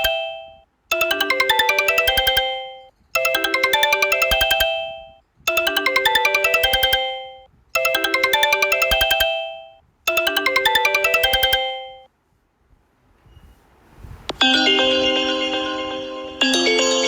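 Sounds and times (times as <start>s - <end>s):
mobile phone ringtone melody: 0.0s - 12.1s.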